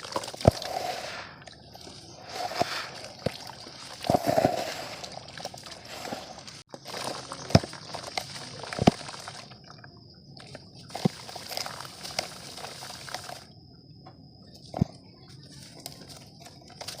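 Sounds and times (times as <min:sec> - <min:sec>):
mud crumbling into water: 0:00.0 - 0:13.5.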